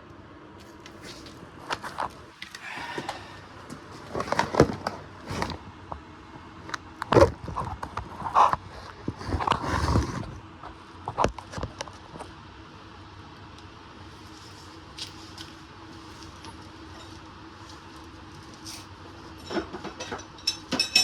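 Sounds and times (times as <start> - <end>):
metal clanks and scrapes of tools: 19.3 - 21.0.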